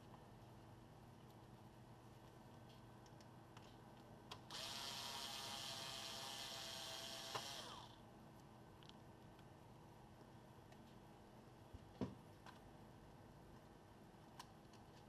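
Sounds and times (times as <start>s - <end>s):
small electric motor whirring: 4.5s - 8.0s.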